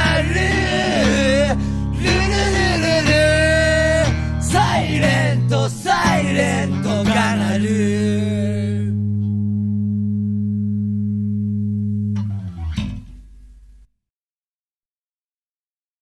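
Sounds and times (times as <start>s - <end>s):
guitar and bass chord ringing: 0.0s - 13.9s
sung note: 9.5s - 13.9s.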